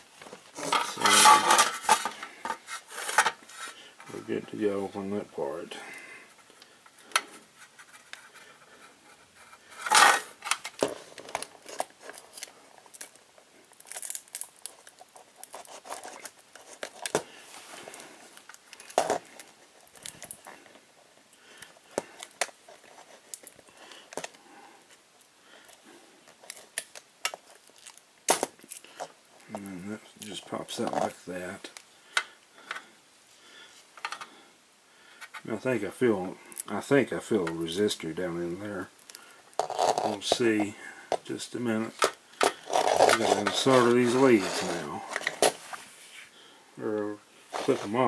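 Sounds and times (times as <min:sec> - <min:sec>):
plastic clicks and scrapes: 0:39.5 - 0:40.4, 0:41.9 - 0:45.6.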